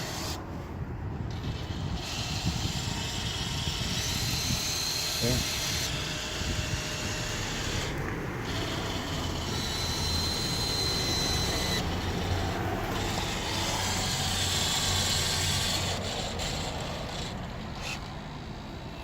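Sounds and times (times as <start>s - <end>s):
model excavator motors whirring: 0.0s - 19.0s.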